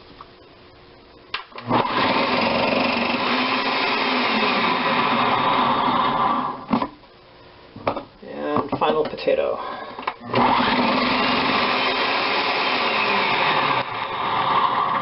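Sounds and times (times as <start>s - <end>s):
electric food slicer motor running: 1.6s - 6.6s, 10.2s - 15.0s.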